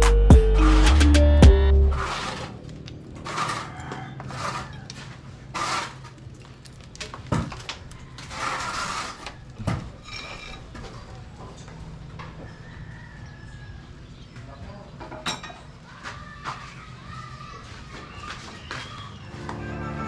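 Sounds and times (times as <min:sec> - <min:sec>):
rough scraping strokes: 0:01.9 - 0:02.6, 0:03.2 - 0:06.2, 0:08.2 - 0:09.4.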